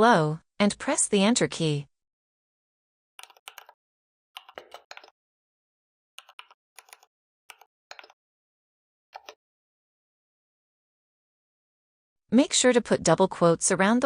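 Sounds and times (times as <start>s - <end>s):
keyboard typing: 3.2s - 3.8s, 4.4s - 5.2s, 6.2s - 8.2s, 9.2s - 9.4s.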